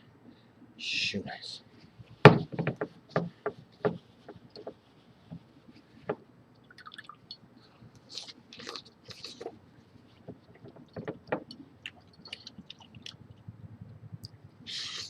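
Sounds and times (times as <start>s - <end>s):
mouth chewing wet tissues: 6.6s - 9.9s, 10.5s - 15.0s.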